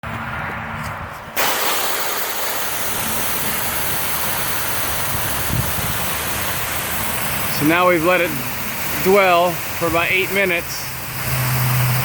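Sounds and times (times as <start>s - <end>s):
high-pressure water spray hissing: 1.4s - 12.0s
pressure washer humming: 1.4s - 12.0s.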